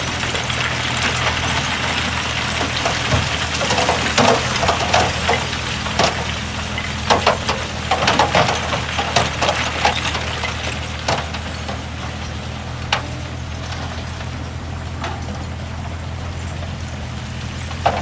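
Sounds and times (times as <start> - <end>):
bulldozer diesel engine running: 0.0 - 18.0.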